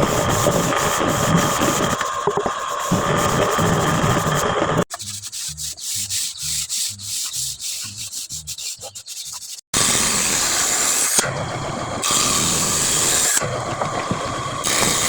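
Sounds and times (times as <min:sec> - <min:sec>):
hand-sanding wood: 0:00.0 - 0:01.9, 0:02.8 - 0:11.1.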